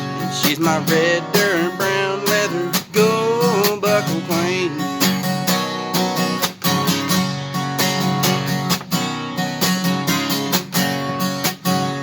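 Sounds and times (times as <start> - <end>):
person singing: 0.0 - 5.2
acoustic guitar strumming: 0.0 - 12.0.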